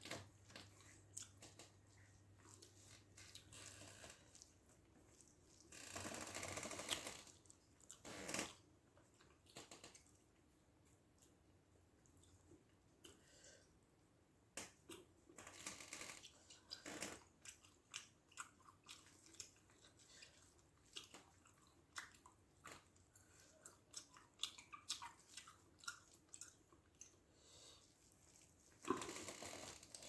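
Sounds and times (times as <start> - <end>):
wet chewing and lip-smacking: 0.6 - 3.7, 6.7 - 10.2, 16.2 - 29.2.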